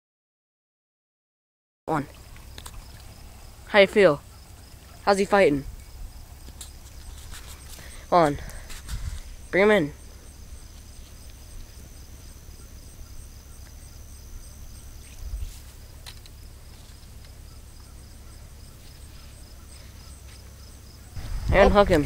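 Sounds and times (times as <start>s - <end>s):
insects chirping: 1.9s - 22.0s
wind rumble on microphone: 8.4s - 9.5s, 14.8s - 15.8s, 21.2s - 22.0s.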